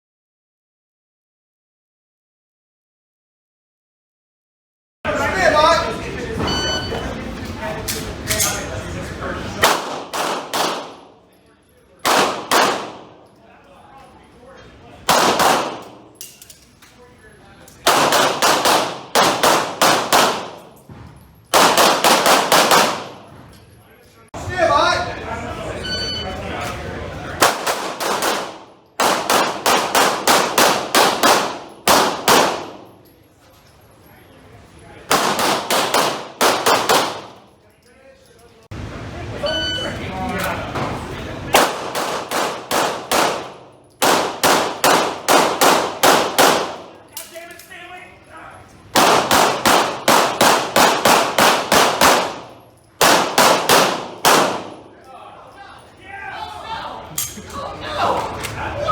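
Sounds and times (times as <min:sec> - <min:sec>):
pistol shots: 0:09.6 - 0:11.2, 0:12.0 - 0:13.2, 0:15.1 - 0:16.4, 0:17.8 - 0:20.8, 0:21.5 - 0:23.3, 0:27.4 - 0:33.0, 0:35.1 - 0:37.5, 0:41.5 - 0:47.0, 0:48.9 - 0:54.9.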